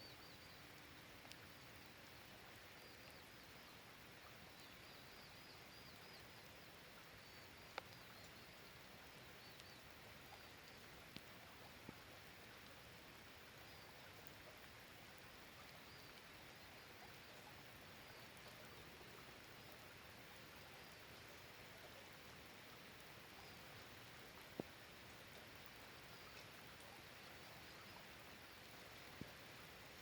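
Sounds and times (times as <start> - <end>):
light steady rain: 0.0 - 30.0
sharp water drips: 7.1 - 30.0.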